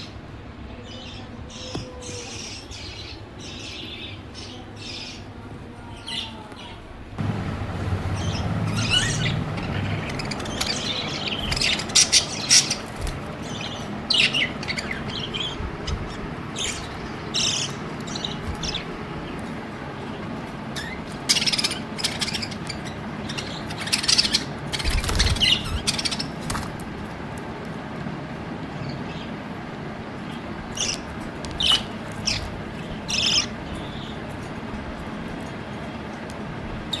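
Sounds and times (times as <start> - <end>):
budgerigars chirping and chattering: 0.8 - 5.3, 7.2 - 27.2, 30.3 - 37.0
steady low hiss: 7.2 - 19.7.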